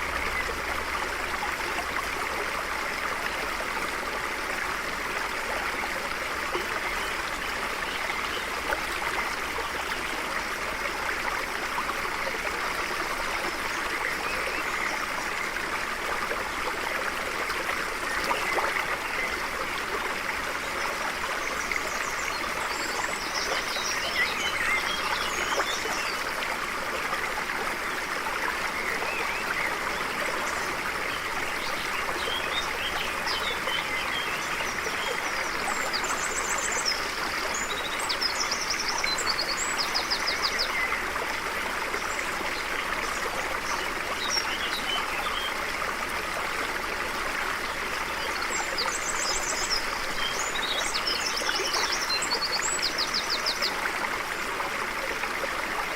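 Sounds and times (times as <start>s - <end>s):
stream flowing over rocks: 0.0s - 55.9s.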